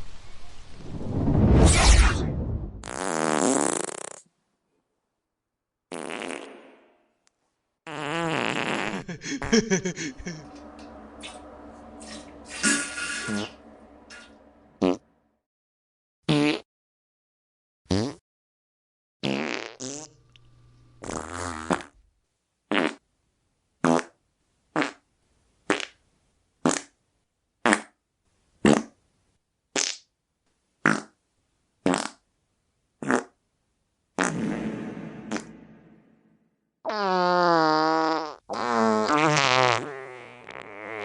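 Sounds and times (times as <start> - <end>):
farts: 2.8 - 4.3, 5.9 - 6.8, 7.9 - 9.5, 12.5 - 13.6, 14.8 - 15.0, 16.3 - 16.7, 17.9 - 18.2, 19.2 - 20.2, 21.0 - 22.0, 22.7 - 23.0, 23.8 - 24.2, 24.8 - 25.0, 25.7 - 26.0, 26.6 - 27.0, 27.6 - 28.0, 28.6 - 29.0, 29.8 - 30.0, 30.8 - 31.2, 31.8 - 32.2, 33.0 - 33.4, 34.2 - 34.7, 36.9 - 41.0.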